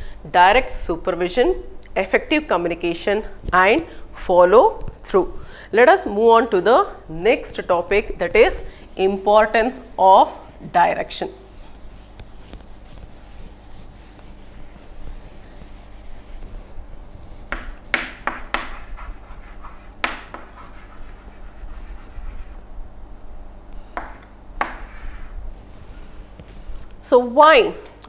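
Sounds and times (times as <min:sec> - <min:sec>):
steady low hum: 0:00.0 - 0:28.0
faint scratching and rubbing: 0:08.2 - 0:16.8.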